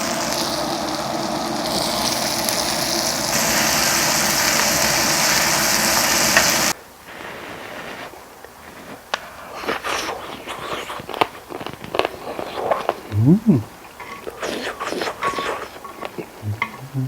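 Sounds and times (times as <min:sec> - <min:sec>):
meat sizzling on a grill: 0:00.0 - 0:08.0.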